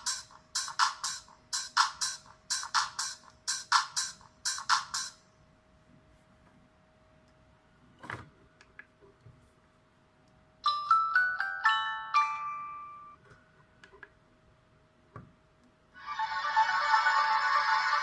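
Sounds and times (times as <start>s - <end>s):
phone chime ringtone: 10.7s - 13.2s.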